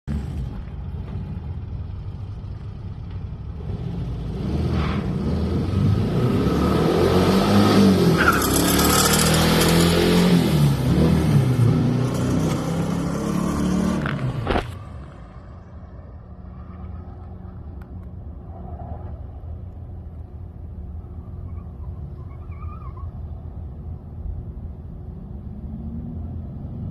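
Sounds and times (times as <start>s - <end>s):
dune buggy engine revving: 3.5s - 14.8s.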